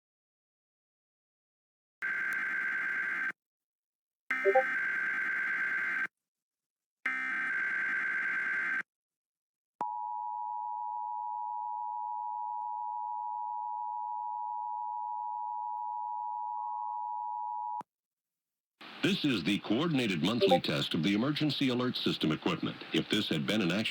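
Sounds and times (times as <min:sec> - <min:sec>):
two-tone attention signal: 0:04.5 - 0:04.7, 0:20.4 - 0:20.6.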